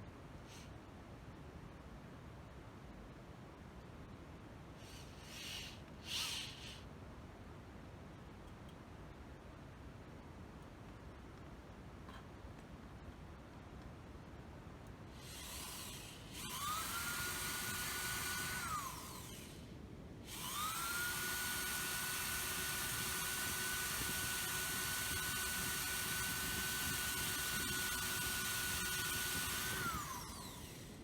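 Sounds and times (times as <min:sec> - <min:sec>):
drill motor whining: 0:04.8 - 0:06.8, 0:15.2 - 0:19.7, 0:20.3 - 0:31.0.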